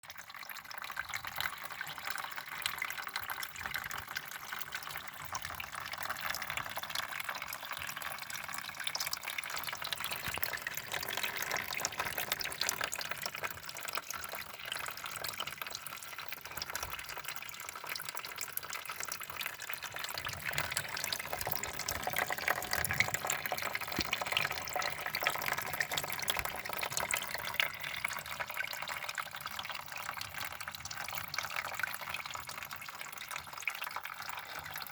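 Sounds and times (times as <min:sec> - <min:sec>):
water trickling and splashing: 0:00.1 - 0:34.9.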